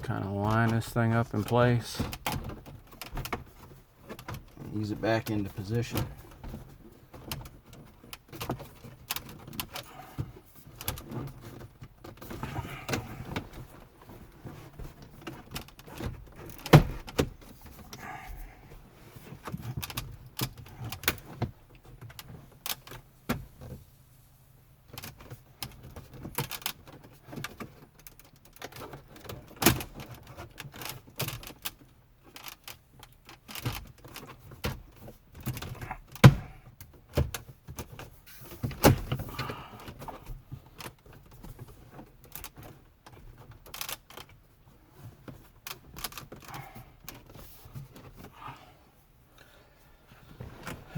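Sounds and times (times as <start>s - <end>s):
plastic trim clicks and rattles: 19.4s - 23.0s, 24.9s - 44.4s, 45.2s - 48.3s.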